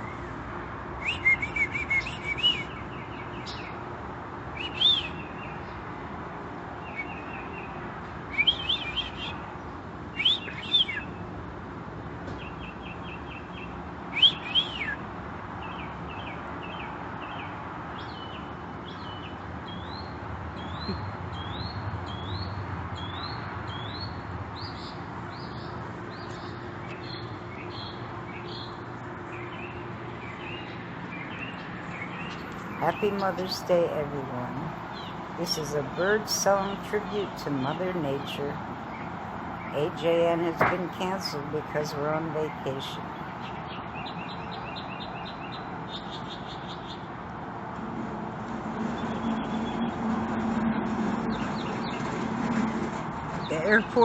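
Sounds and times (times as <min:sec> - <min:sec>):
songbirds chirping and trilling: 0:00.0 - 0:11.4, 0:12.0 - 0:54.0
steady low background hum: 0:00.0 - 0:45.6
bird whistling rising notes: 0:01.0 - 0:02.8.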